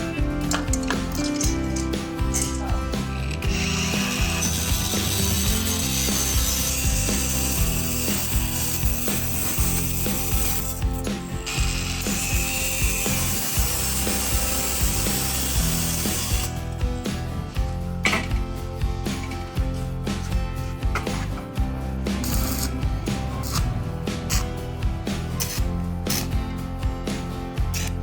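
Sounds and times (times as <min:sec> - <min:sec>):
workshop tool running: 0:00.0 - 0:16.8, 0:22.1 - 0:23.7.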